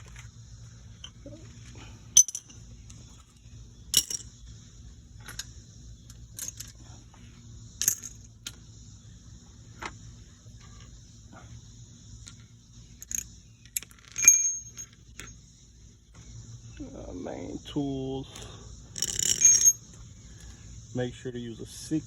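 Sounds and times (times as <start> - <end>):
steady low hum: 0.0 - 22.0
metallic clinks of hand tools: 14.0 - 14.9, 19.0 - 19.8.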